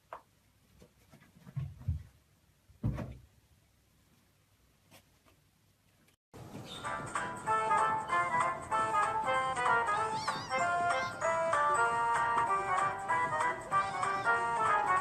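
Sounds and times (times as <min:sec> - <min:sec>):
dull thumps: 0:02.8 - 0:03.4.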